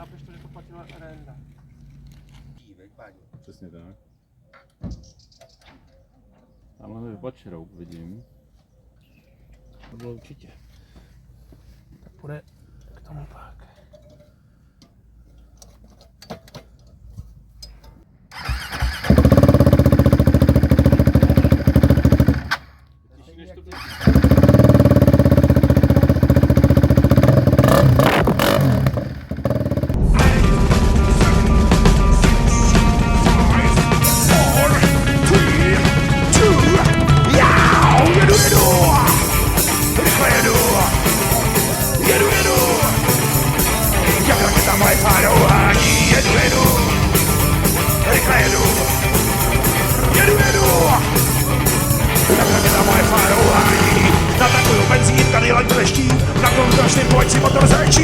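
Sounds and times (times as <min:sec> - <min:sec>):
motorcycle engine starting and running: 0:18.3 - 0:22.9, 0:23.7 - 0:58.0
loud rock music with drums: 0:29.8 - 0:58.0.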